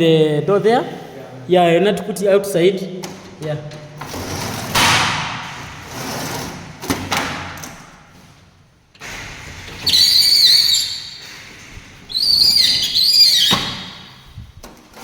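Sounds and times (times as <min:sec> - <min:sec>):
high wavering squeaks: 0:09.8 - 0:14.2.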